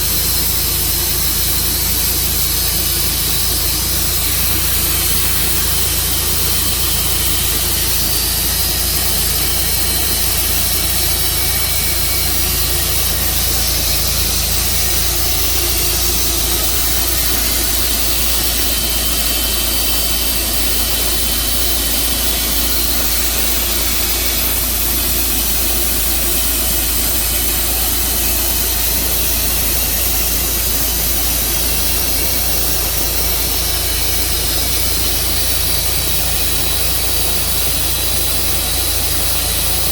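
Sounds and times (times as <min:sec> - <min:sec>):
sawmill running: 0:00.0 - 0:39.9.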